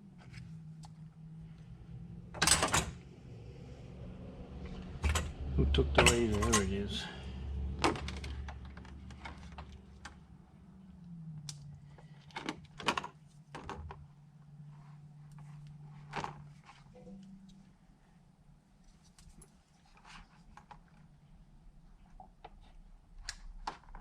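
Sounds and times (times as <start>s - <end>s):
steady low hum: 0.0s - 18.9s.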